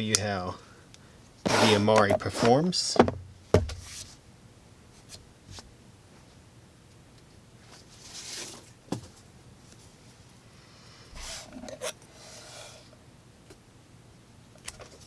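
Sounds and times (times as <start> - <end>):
soft rustle: 7.6 - 10.3.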